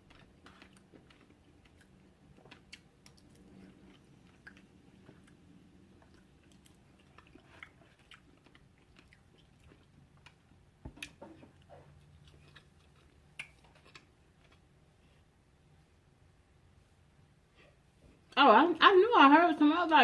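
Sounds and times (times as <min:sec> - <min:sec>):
person chewing food: 0:00.0 - 0:15.3.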